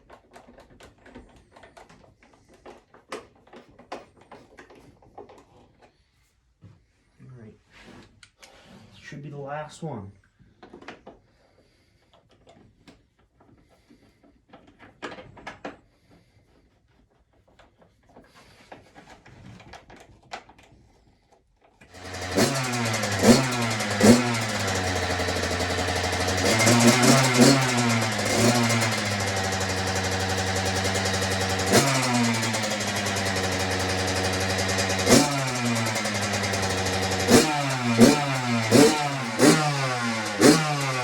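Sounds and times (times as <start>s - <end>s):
two-stroke engine revving: 21.9s - 41.0s.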